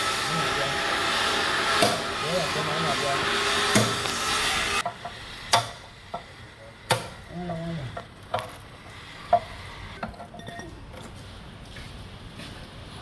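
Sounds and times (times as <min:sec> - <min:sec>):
metal parts and tools clinking: 0:10.0 - 0:11.1.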